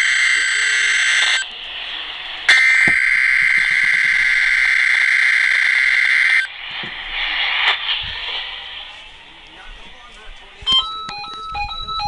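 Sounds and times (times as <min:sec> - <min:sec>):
two-tone digital warble: 0:00.0 - 0:01.4, 0:02.5 - 0:06.5
radio hiss: 0:00.0 - 0:11.4.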